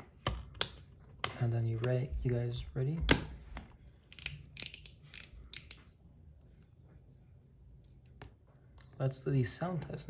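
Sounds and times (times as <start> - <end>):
sharp metallic slider clicks: 4.1 - 5.8.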